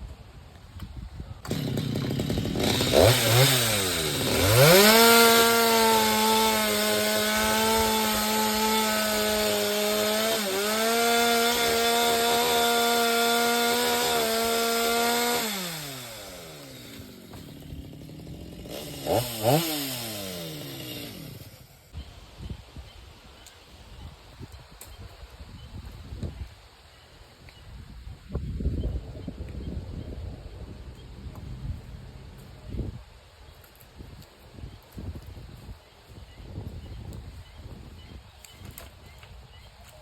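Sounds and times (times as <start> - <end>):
chainsaw revving: 1.4 - 21.9.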